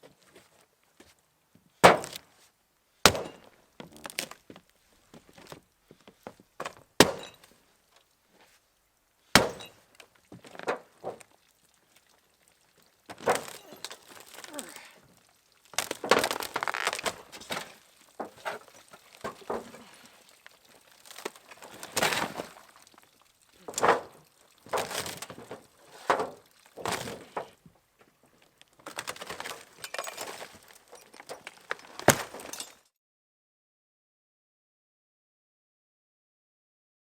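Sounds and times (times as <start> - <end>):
material cracking and breaking: 3.1 - 5.5, 13.1 - 27.4, 28.5 - 32.6.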